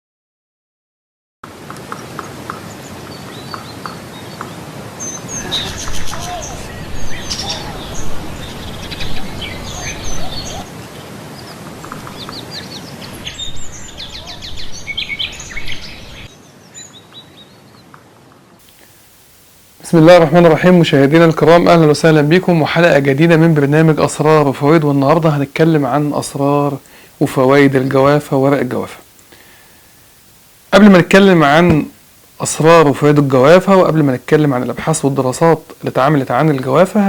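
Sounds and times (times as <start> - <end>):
outdoor background noise: 1.4 - 37.0
birds chirping and trilling: 1.8 - 18.0, 20.0 - 29.6.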